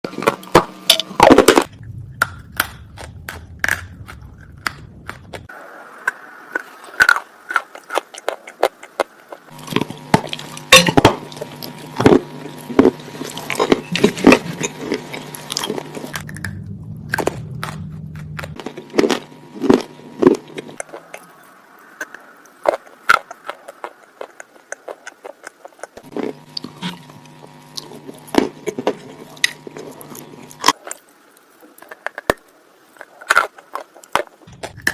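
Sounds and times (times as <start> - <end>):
low hum: 1.6 - 5.5, 9.6 - 20.2, 34.5 - 34.9.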